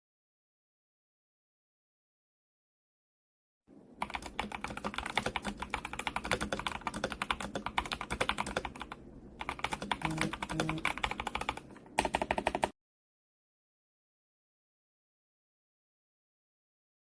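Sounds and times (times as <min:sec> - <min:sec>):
mechanical keyboard typing: 0:04.0 - 0:12.8.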